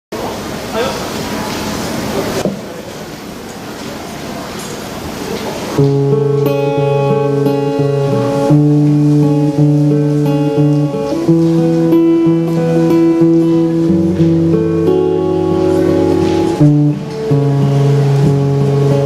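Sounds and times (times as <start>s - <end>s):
acoustic guitar playing chords: 5.8s - 19.0s.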